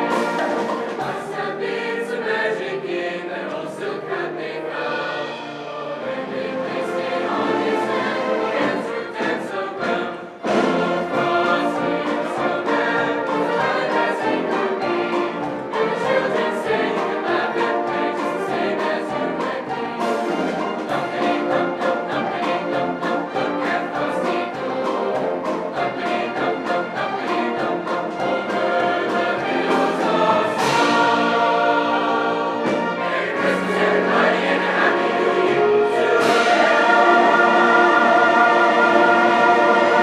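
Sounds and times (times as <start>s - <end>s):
choir singing with instruments: 0.0s - 40.0s.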